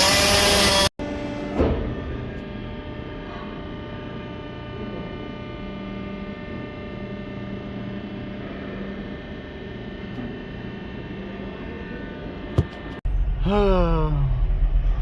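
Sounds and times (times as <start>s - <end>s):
electrical hum: 0.0s - 15.0s
loud low rumble: 13.1s - 15.0s.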